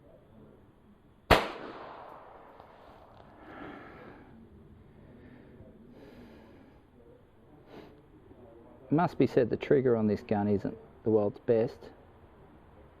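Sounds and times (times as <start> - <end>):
pistol shot: 1.3 - 3.1.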